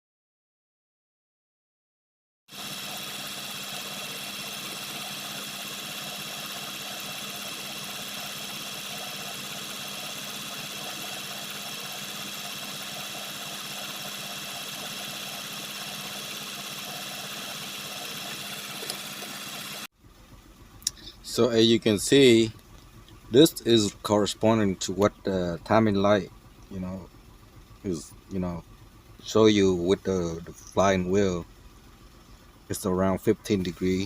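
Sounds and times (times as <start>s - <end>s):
car engine idling: 4.2s - 34.0s.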